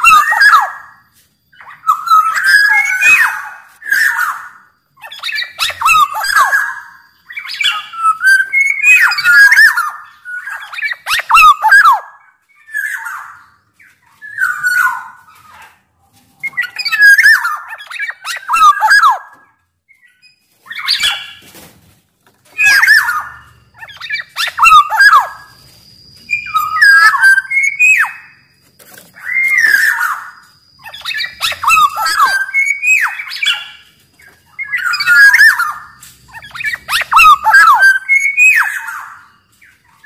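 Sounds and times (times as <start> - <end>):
oriole singing whistles: 0.0 - 15.6, 16.4 - 21.4, 22.5 - 40.0.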